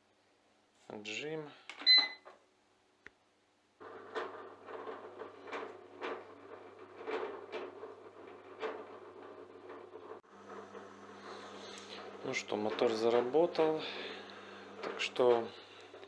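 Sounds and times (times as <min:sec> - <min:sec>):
control panel beep: 0:01.8 - 0:02.2
drum knocks and rustles: 0:03.8 - 0:11.7
washing machine motor humming: 0:03.8 - 0:16.0.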